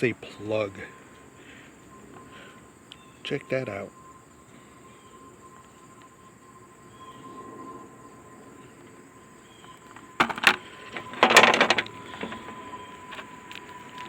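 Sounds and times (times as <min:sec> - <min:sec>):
plastic pliers clattering rattle: 0:10.2 - 0:12.5.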